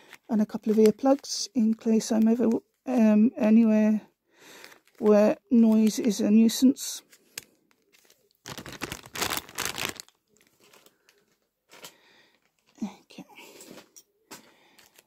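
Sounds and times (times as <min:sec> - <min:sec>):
plastic packaging crinkling: 0:00.0 - 0:02.7, 0:04.6 - 0:06.2, 0:07.0 - 0:12.8.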